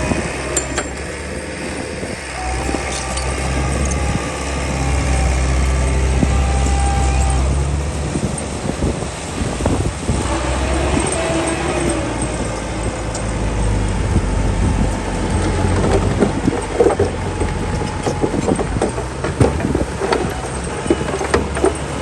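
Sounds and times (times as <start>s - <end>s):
faint whine: 0.0s - 21.7s
diesel machinery rumbling: 0.0s - 22.0s
metal clanks and knocks: 15.3s - 22.0s.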